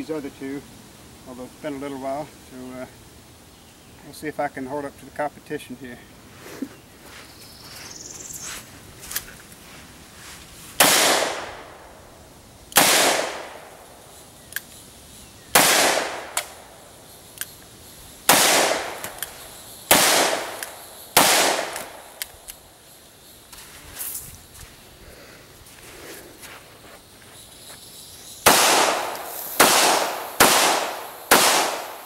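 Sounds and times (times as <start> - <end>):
gunshots: 10.8 - 11.7, 12.8 - 13.7, 15.6 - 16.6, 18.3 - 19.2, 19.9 - 22.1, 28.4 - 32.0
faint sharp clicks: 14.5 - 14.8.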